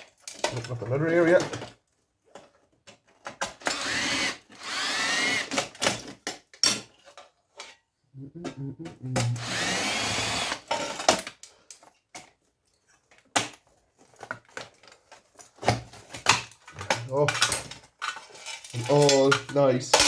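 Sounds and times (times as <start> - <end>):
power drill motor whine: 3.7 - 5.5, 9.4 - 10.7
handling clicks and knocks: 13.0 - 20.0.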